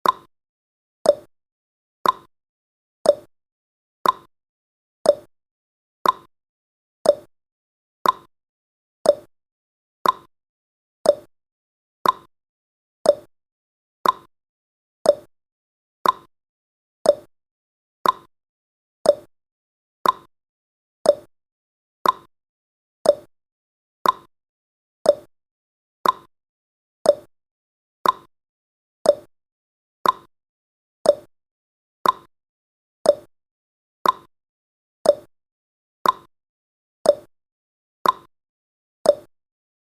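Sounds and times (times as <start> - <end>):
timer ticking: 0.0 - 0.3, 1.0 - 1.3, 2.0 - 2.3, 3.0 - 3.3, 4.0 - 4.3, 5.1 - 5.3, 6.0 - 6.3, 7.0 - 7.3, 8.0 - 8.3, 9.0 - 9.3, 10.0 - 10.3, 11.0 - 11.3, 12.0 - 12.3, 13.0 - 13.3, 14.0 - 14.3, 15.0 - 15.3, 16.0 - 16.3, 17.0 - 17.3, 18.0 - 18.3, 19.0 - 19.3, 20.0 - 20.3, 21.0 - 21.3, 22.0 - 22.3, 23.0 - 23.3, 24.0 - 24.3, 25.0 - 25.3, 26.0 - 26.3, 27.0 - 27.3, 28.0 - 28.3, 29.0 - 29.3, 30.0 - 30.3, 31.0 - 31.3, 32.0 - 32.3, 33.0 - 33.3, 34.0 - 34.3, 35.0 - 35.3, 36.0 - 36.3, 37.0 - 37.3, 38.0 - 38.3, 39.1 - 39.3.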